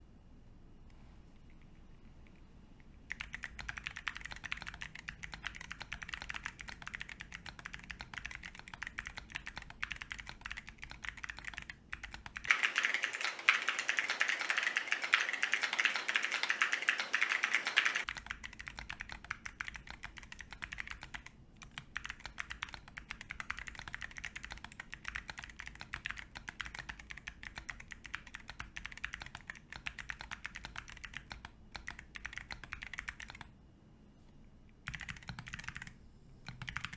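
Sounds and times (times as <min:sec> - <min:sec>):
mechanical keyboard typing: 0:03.1 - 0:33.5, 0:34.9 - 0:36.9.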